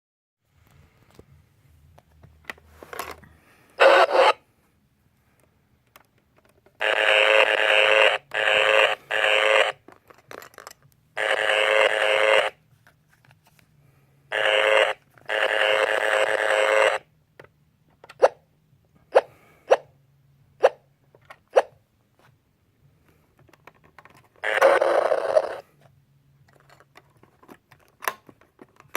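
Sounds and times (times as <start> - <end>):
toy engine sound effects: 3.8 - 4.4, 6.8 - 9.8, 11.2 - 12.6, 14.3 - 17.0, 24.4 - 25.6.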